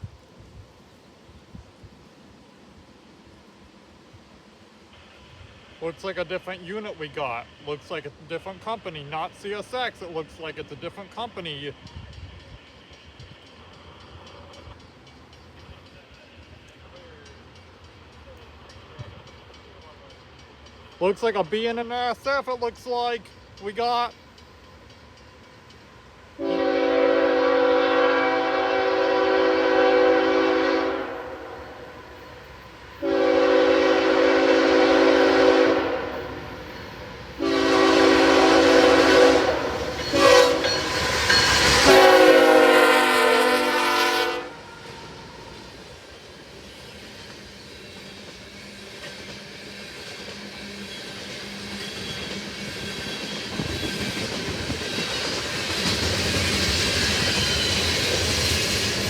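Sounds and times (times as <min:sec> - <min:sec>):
freight train rumble: 0:00.0 - 0:59.0
locomotive air horn blasts: 0:26.4 - 0:31.8, 0:33.0 - 0:36.5, 0:37.4 - 0:40.9, 0:41.8 - 0:44.9.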